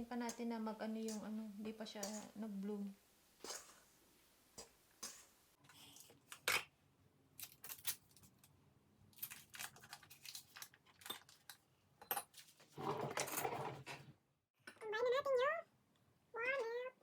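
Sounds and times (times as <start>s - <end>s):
metal utensils clinking on bowls: 1.0s - 1.3s, 2.0s - 2.4s, 4.6s - 5.3s.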